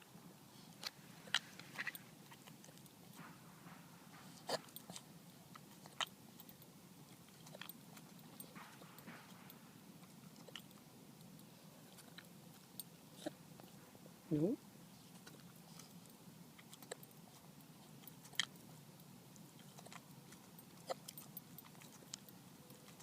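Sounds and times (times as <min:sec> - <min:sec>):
small dog hiccuping: 0:03.2 - 0:05.1.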